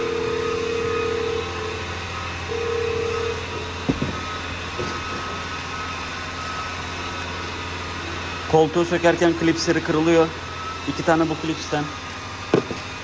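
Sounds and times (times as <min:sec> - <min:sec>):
buzzing tone: 0:00.0 - 0:08.5
low mechanical hum: 0:00.0 - 0:13.0.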